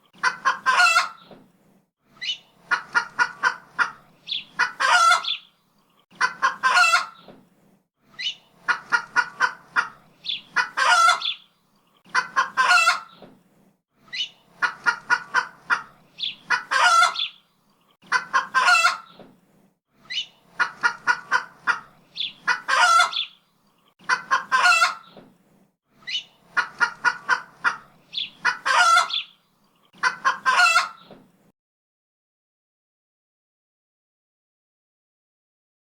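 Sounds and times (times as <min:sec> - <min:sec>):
hen clucking and squawking: 0:00.1 - 0:01.4, 0:02.2 - 0:05.5, 0:06.1 - 0:07.3, 0:08.2 - 0:13.2, 0:14.1 - 0:17.4, 0:18.0 - 0:19.2, 0:20.0 - 0:23.4, 0:24.0 - 0:25.2, 0:26.0 - 0:31.2.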